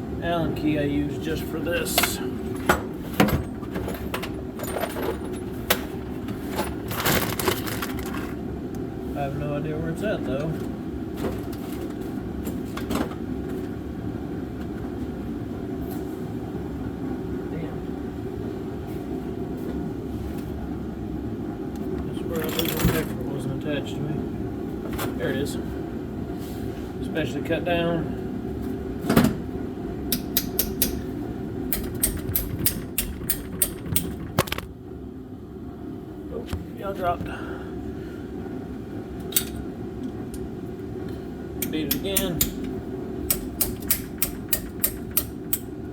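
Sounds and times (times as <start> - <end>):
shop heater rumbling: 0.0 - 45.9
steady low hum: 0.0 - 45.9
tools clinking and clattering: 1.9 - 5.6
sharp metal clicks: 30.1 - 31.0, 31.7 - 34.6, 41.6 - 42.7, 43.3 - 45.7.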